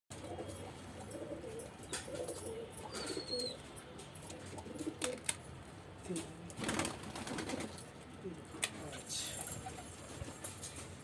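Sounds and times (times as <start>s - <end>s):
pigeons cooing: 0.2s - 3.7s, 4.3s - 5.3s.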